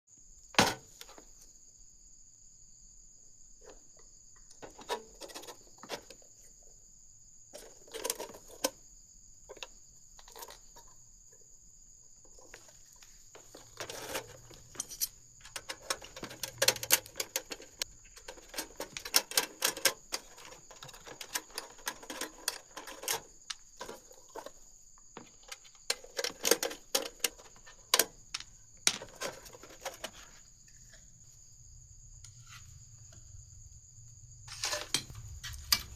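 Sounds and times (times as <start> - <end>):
small hard parts clicking and rattling: 12.2 - 30.4.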